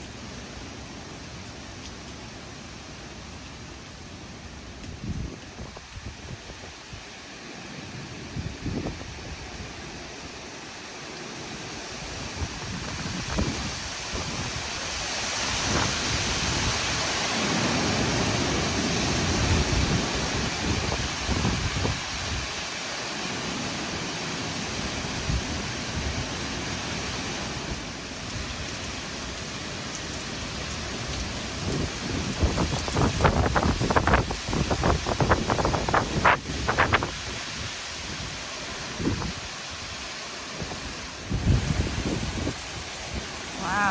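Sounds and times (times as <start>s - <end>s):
storm wind and rain: 0.0s - 43.9s
wind gusts buffeting microphone: 4.8s - 7.1s, 8.0s - 10.6s, 11.6s - 22.7s, 23.8s - 43.9s.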